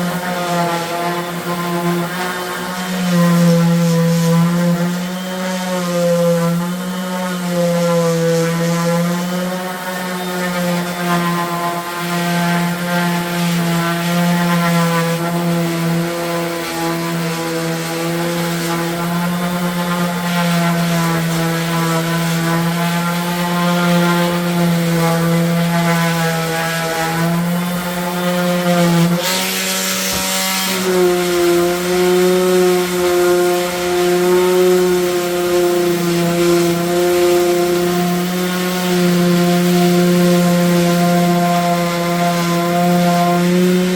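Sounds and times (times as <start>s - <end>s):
power tool motor running: 0.0s - 43.9s
burst of hiss: 24.1s - 41.6s.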